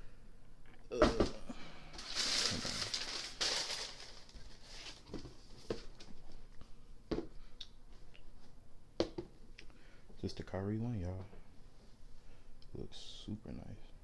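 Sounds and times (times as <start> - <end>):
tissue paper crinkling: 1.9 - 5.1.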